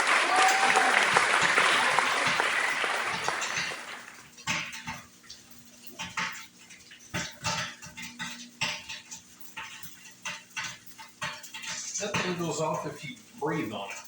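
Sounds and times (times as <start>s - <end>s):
faint steady hum: 0.0s - 14.0s
dishes and utensils clattering: 1.8s - 5.2s, 5.8s - 12.5s.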